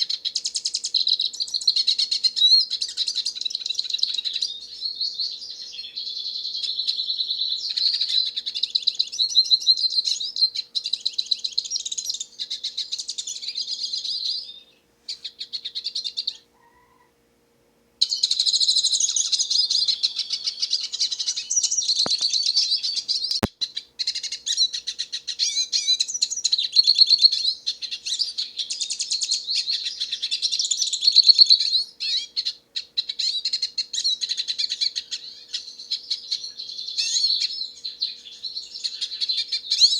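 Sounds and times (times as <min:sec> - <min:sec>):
small bird twittering song: 0:00.0 - 0:17.0, 0:18.0 - 0:39.9
sharp click: 0:22.0 - 0:22.4, 0:23.2 - 0:23.5.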